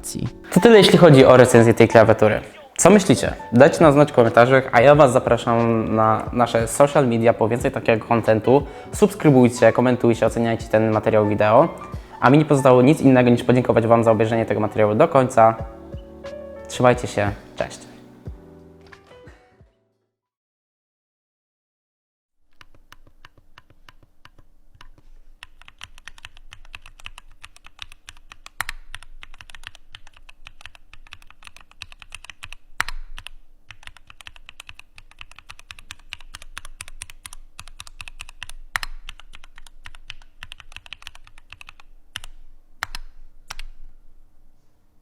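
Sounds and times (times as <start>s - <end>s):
mechanical keyboard typing: 22.6s - 43.8s.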